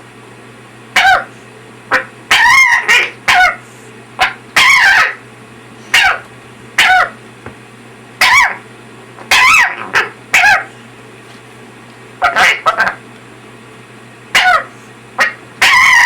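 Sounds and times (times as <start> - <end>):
parrot harsh calls: 1.0 - 1.3, 1.9 - 3.6, 4.2 - 5.2, 5.9 - 6.2, 6.8 - 7.2, 8.2 - 8.6, 9.2 - 10.7, 12.2 - 13.0, 14.3 - 16.0.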